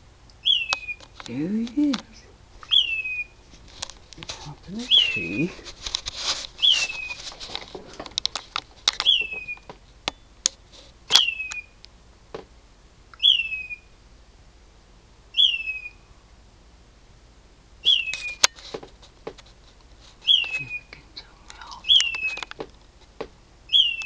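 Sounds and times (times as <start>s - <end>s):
bird whistled call: 0.4s - 1.0s, 2.7s - 3.3s, 4.9s - 5.4s, 9.0s - 9.7s, 11.1s - 11.8s, 13.2s - 13.9s, 15.3s - 16.0s, 17.8s - 18.4s, 20.2s - 20.9s, 23.7s - 24.0s
sharp clicks: 21.4s - 22.8s.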